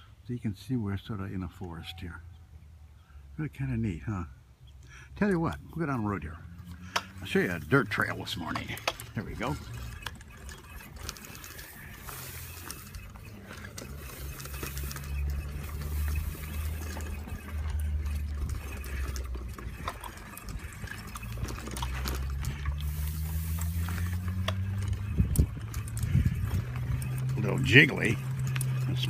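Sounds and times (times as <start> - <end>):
bicycle tyres crunching on dirt: 5.0 - 29.0.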